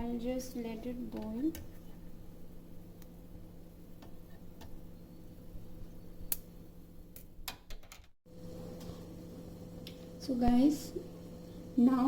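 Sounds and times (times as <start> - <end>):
faint steady hum: 8.3 - 12.0.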